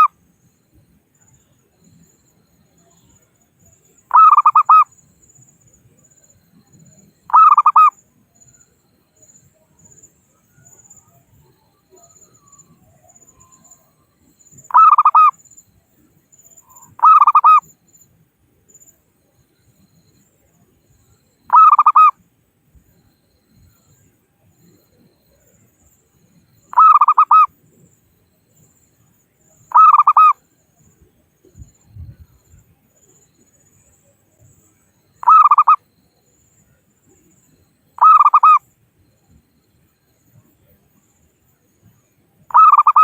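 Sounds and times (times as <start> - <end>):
dove cooing: 4.1 - 4.8, 14.7 - 15.3, 26.8 - 27.5, 29.7 - 30.3, 35.2 - 35.8, 38.0 - 38.6, 42.5 - 43.0.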